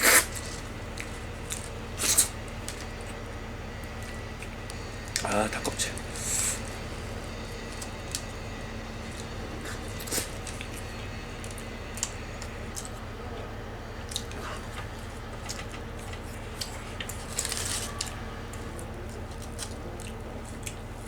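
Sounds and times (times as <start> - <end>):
person chewing chicken: 0.0 - 3.2, 9.1 - 10.8, 14.1 - 17.9, 19.3 - 21.0
steady low hum: 0.0 - 21.0.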